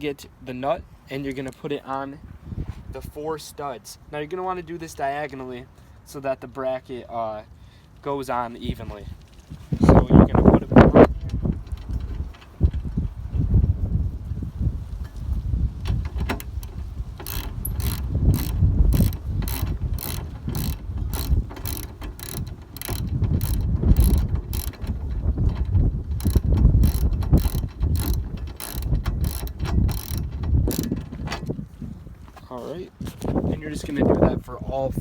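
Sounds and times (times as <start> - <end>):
hand ratchet clicking: 16.3 - 31.5.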